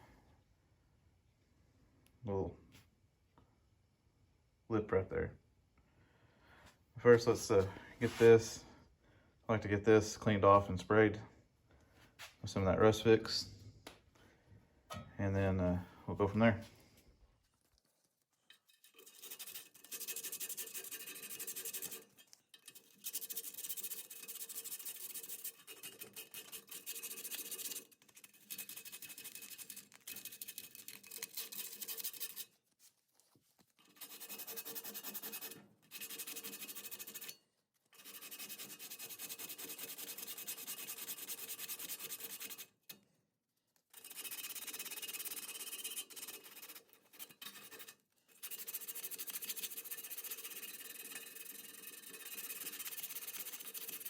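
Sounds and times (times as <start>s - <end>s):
hand sanding metal: 8.0s - 8.5s, 18.9s - 32.4s, 33.9s - 37.4s, 38.0s - 42.7s, 44.0s - 54.0s.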